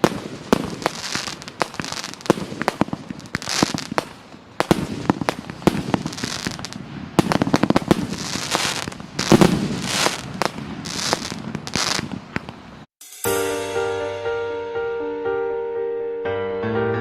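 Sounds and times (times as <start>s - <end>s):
fireworks bangs and bursts: 0.0s - 12.9s
fireworks crackling hisses: 0.0s - 13.8s.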